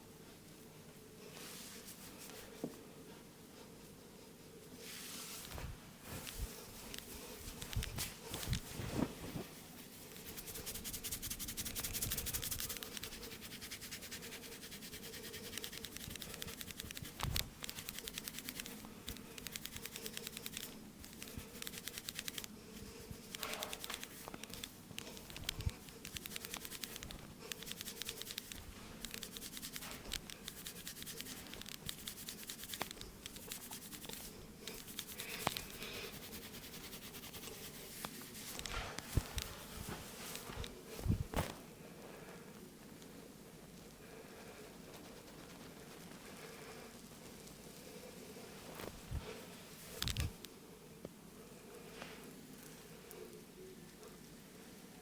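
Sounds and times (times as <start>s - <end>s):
fingers scratching scalp: 6.4s - 8.8s, 9.4s - 40.0s.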